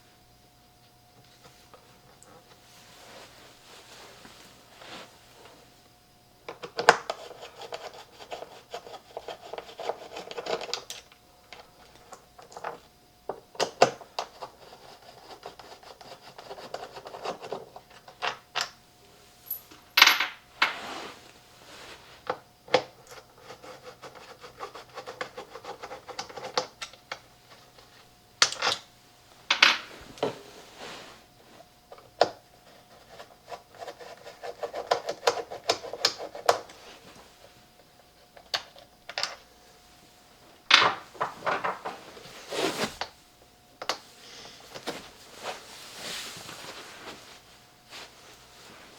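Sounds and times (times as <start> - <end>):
scraping and rubbing: 41.1 - 43.0.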